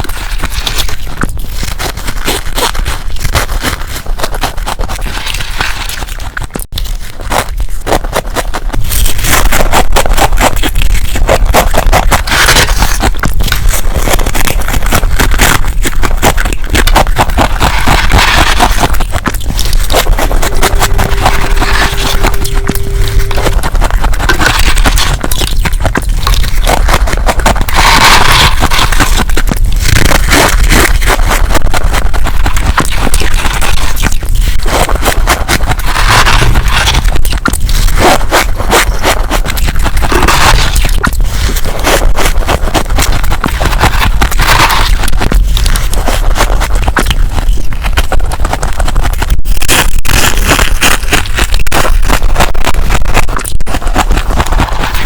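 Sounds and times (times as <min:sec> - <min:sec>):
ice crackling and crunching: 0:00.0 - 0:55.0
steady hum: 0:19.6 - 0:26.5.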